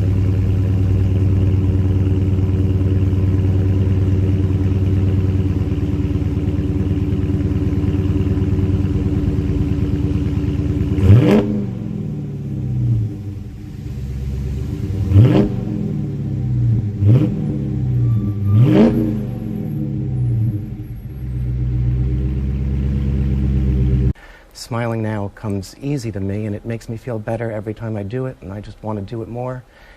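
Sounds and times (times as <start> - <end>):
car engine idling and revving: 0.0 - 24.2.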